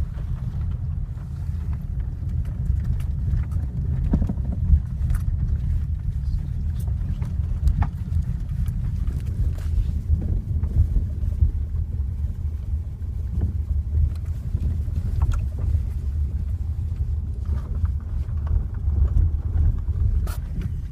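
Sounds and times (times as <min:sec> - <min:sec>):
car interior rumble: 0:00.0 - 0:20.9.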